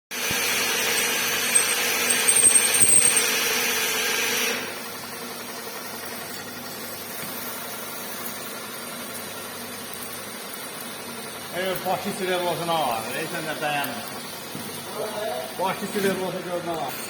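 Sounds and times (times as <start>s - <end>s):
spindle running tone: 0.5s - 3.4s.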